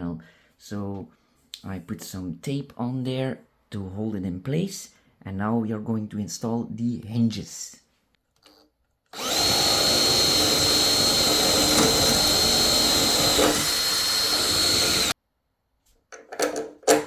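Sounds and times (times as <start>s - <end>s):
electric drill whining: 9.2s - 15.2s.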